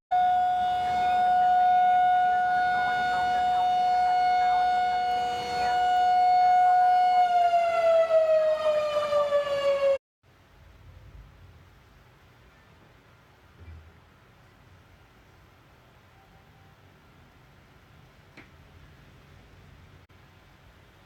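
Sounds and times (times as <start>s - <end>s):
warning siren steady tone: 0.1s - 10.0s.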